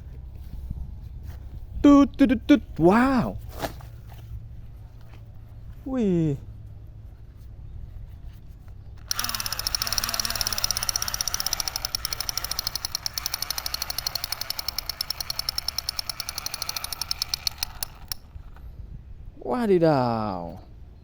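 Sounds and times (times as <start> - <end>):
toy gun machine-gun rattle: 9.0 - 18.5.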